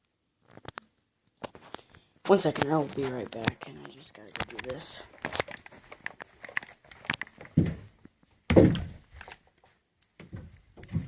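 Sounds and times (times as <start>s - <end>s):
clicks and knocks: 2.6s - 9.4s, 10.0s - 11.0s
heavy thuds: 7.5s - 9.0s.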